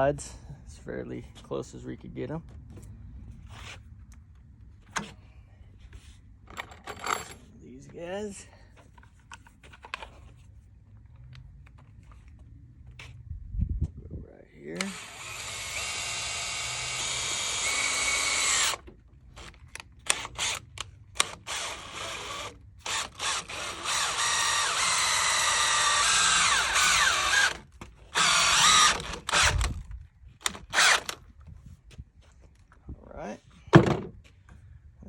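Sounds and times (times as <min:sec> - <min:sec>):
power drill driving screws: 0:14.8 - 0:29.8, 0:30.4 - 0:31.2.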